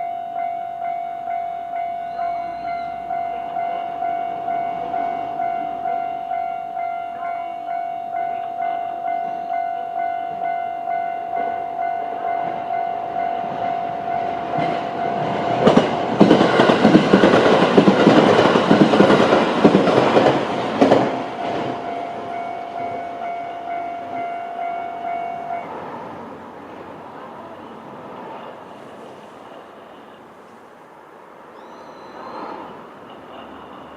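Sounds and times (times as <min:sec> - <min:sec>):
level-crossing warning bell: 0:00.0 - 0:26.5
train wheels clacking over rail joints: 0:13.2 - 0:24.8.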